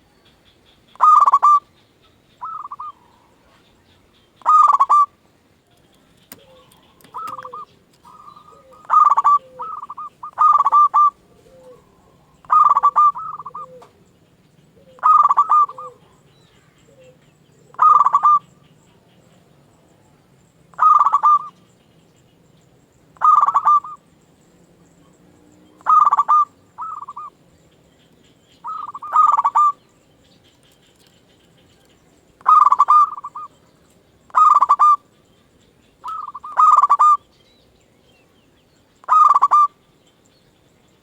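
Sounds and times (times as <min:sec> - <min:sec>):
dove cooing: 0:00.9 - 0:01.8, 0:02.4 - 0:03.8, 0:04.4 - 0:05.2, 0:06.0 - 0:19.5, 0:20.7 - 0:21.6, 0:23.2 - 0:24.1, 0:25.1 - 0:27.4, 0:28.6 - 0:29.8, 0:31.7 - 0:33.6, 0:34.3 - 0:35.2, 0:36.0 - 0:37.2, 0:39.0 - 0:39.8.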